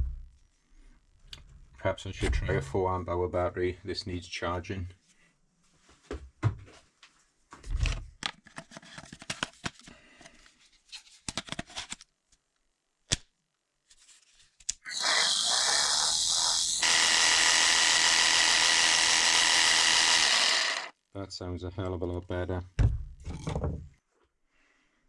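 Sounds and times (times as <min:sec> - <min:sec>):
jigsaw motor running: 0:14.9 - 0:20.9.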